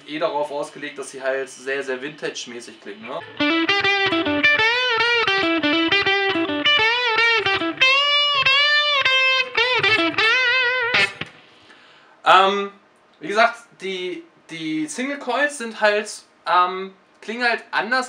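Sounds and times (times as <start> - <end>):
guitar pickup hiss: 2.5 - 11.8
electric guitar blues lick: 3.2 - 11.7.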